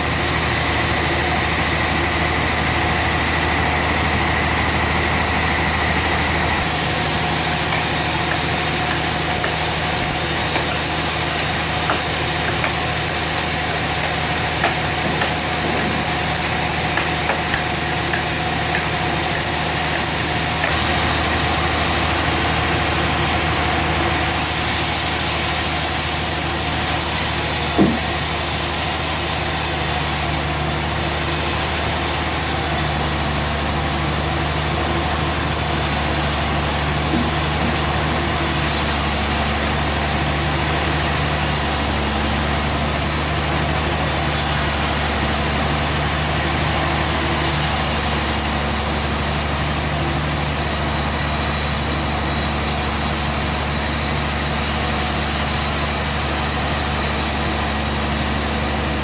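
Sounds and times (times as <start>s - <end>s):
sawmill engine running: 0.0s - 59.0s
sharp knock: 27.8s - 28.1s.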